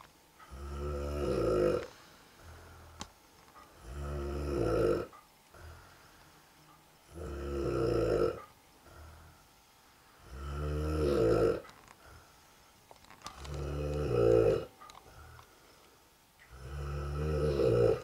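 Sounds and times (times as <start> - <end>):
man snoring: 0.5 - 1.9, 3.8 - 5.8, 7.0 - 9.3, 10.2 - 11.6, 13.4 - 15.4, 16.5 - 18.0
soft breathing: 1.7 - 4.0, 5.0 - 7.1, 8.3 - 16.6.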